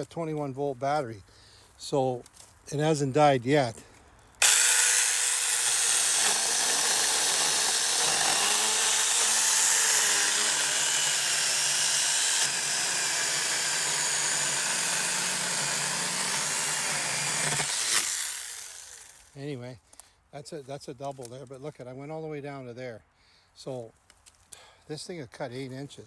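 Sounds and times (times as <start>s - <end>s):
chainsaw cutting log: 4.4s - 19.4s.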